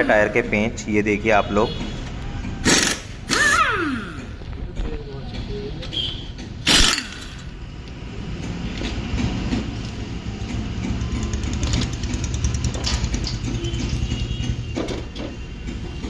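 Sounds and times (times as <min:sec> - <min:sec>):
impact wrench hammering rattle: 0:02.6 - 0:04.5, 0:06.4 - 0:07.6.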